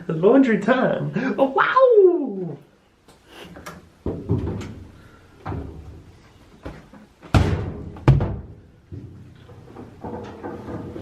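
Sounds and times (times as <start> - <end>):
knocks and bumps: 4.0 - 11.0
door-like slam: 7.3 - 8.6.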